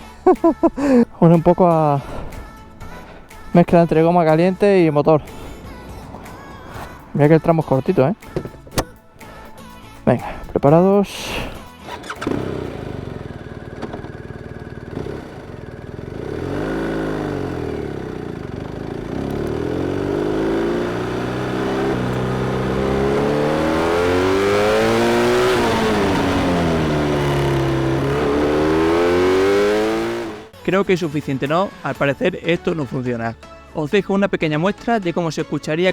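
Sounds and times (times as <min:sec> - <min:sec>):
motorcycle engine accelerating: 0:11.7 - 0:30.6.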